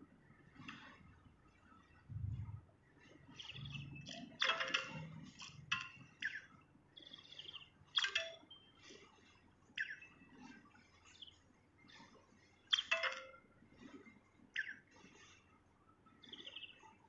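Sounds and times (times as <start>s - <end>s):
songbird singing: 1.6s - 8.8s, 9.7s - 13.4s, 14.5s - 14.9s, 16.0s - 17.0s.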